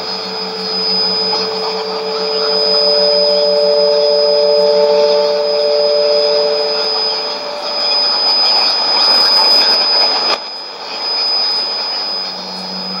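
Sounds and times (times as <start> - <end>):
chord of test tones: 0.0 - 10.0
high-pitched whistle: 0.0 - 10.3.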